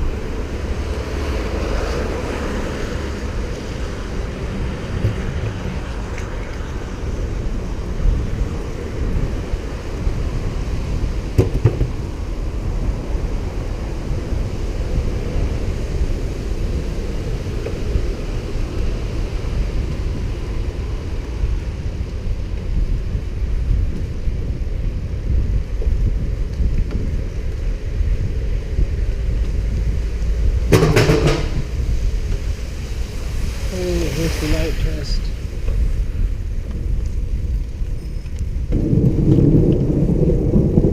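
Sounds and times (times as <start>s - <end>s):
wind buffeting microphone: 0.0s - 40.9s
sharp knocks: 11.4s - 11.9s, 30.7s - 31.7s.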